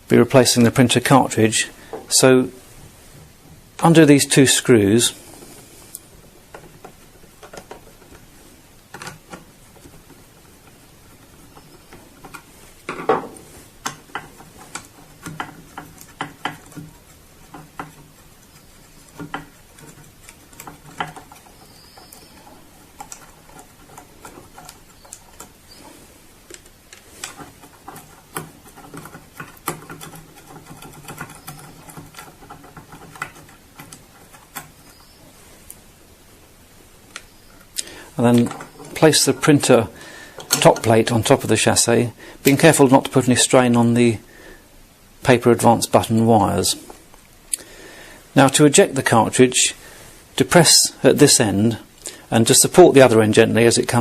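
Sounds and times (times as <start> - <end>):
metal and plastic clicks and scrapes: 13.8 - 35.1.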